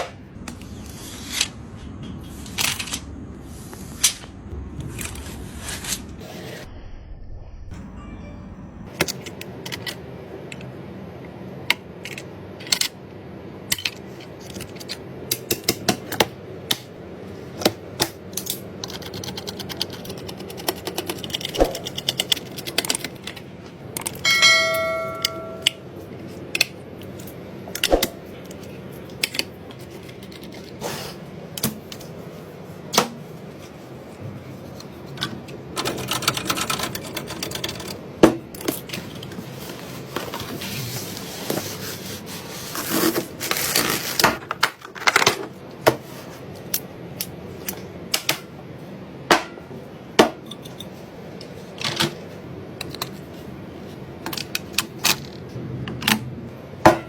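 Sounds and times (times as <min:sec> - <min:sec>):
brief ringing tone: 0:07.7 - 0:08.9
computer parts clicking and tapping: 0:17.6 - 0:25.8, 0:35.2 - 0:39.4.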